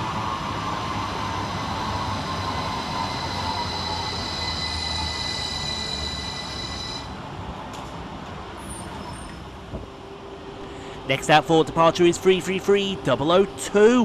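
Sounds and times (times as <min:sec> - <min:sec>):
train traction motor whine: 0:00.0 - 0:07.5
rumble of running train: 0:00.0 - 0:14.0
steady high-pitched tones: 0:01.5 - 0:07.2.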